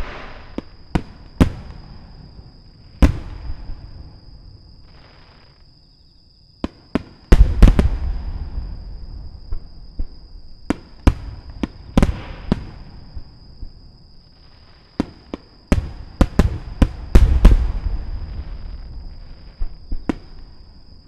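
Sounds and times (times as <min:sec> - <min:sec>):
firework shells booming: 0:00.0 - 0:04.2, 0:06.6 - 0:13.3, 0:15.0 - 0:20.7.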